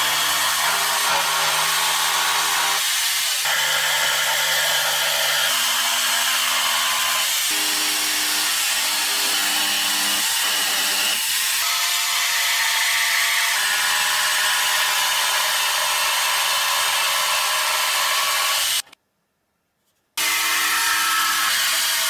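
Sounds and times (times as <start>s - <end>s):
electric jigsaw running: 0.0s - 12.8s.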